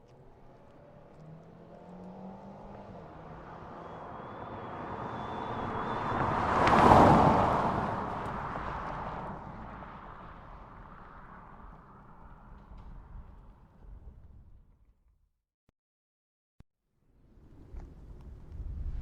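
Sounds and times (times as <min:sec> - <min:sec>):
car driving past: 0:00.1 - 0:13.6.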